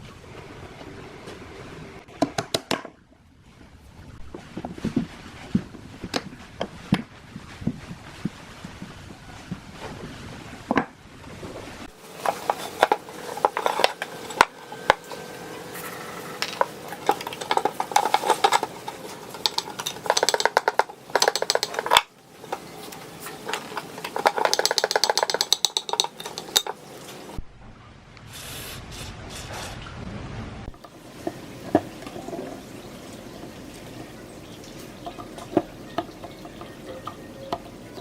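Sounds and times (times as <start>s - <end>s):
tools clinking on metal: 16.5s - 22.1s, 23.5s - 26.8s
rapid clicks: 17.1s - 22.1s, 24.0s - 26.8s.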